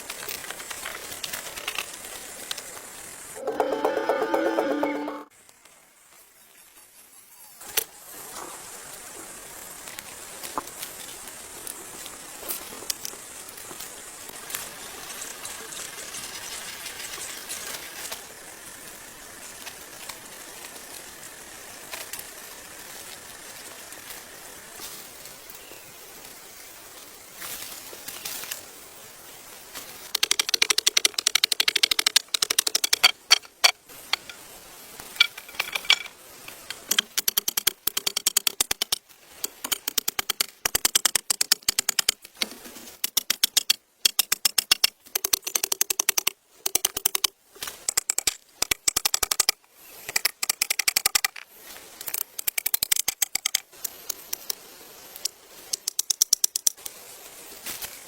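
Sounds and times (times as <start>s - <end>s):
rapid sharp clicking: 30.1s - 34.4s, 36.6s - 42.4s.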